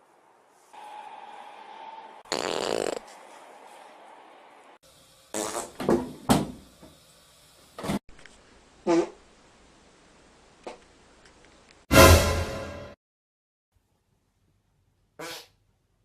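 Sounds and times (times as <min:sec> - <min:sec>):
fart: 0:02.3 - 0:03.1, 0:05.3 - 0:05.8, 0:08.8 - 0:09.2, 0:15.2 - 0:15.6
short sharp sounds: 0:11.9 - 0:13.0.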